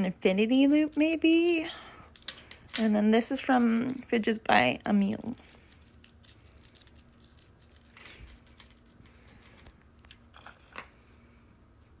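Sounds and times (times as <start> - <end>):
fidget toy rustling: 5.0 - 12.0.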